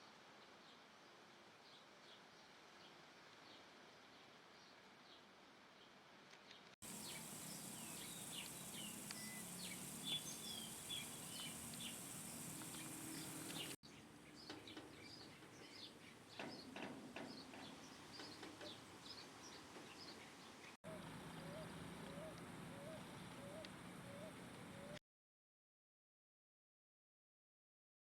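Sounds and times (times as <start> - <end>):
small birds chirping: 6.5 - 25.0
steady high hiss: 6.8 - 13.8.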